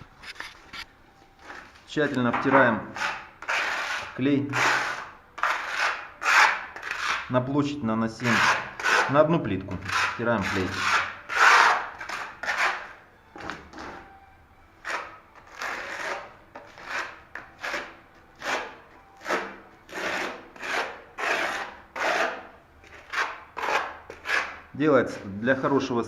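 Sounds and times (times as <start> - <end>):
trowel scraping adhesive on floor: 2.4 - 7.3, 8.2 - 12.9, 14.8 - 25.9.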